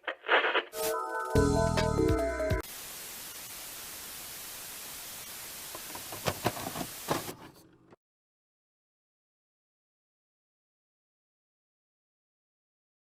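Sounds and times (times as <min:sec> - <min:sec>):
crackles: 0:00.0 - 0:01.0
static hiss: 0:02.6 - 0:08.0.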